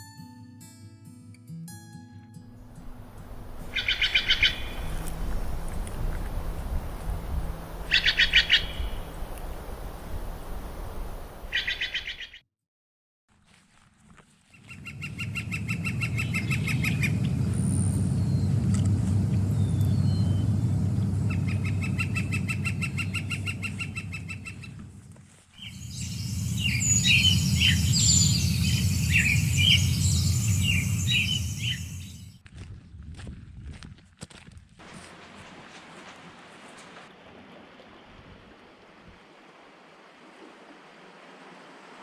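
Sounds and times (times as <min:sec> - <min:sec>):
steady low rushing noise: 0:02.6 - 0:11.6, 0:25.9 - 0:32.2
birds singing: 0:02.6 - 0:12.4, 0:25.6 - 0:32.3
fast repeated bird trill: 0:02.8 - 0:05.6, 0:07.6 - 0:09.2, 0:11.4 - 0:12.4, 0:25.6 - 0:32.2.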